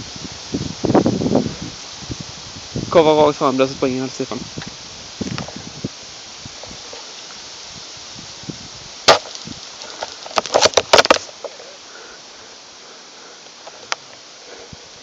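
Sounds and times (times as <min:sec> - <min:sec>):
wind noise: 0:00.0 - 0:11.4.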